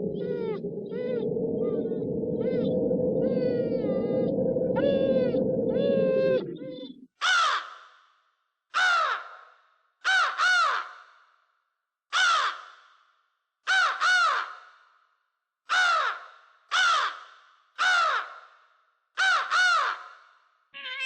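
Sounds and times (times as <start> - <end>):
wailing cry: 0.0 - 6.9
low rumble: 0.0 - 7.0
crow cawing: 8.8 - 11.1, 12.2 - 12.7, 13.7 - 14.6, 15.7 - 18.5, 19.2 - 20.2.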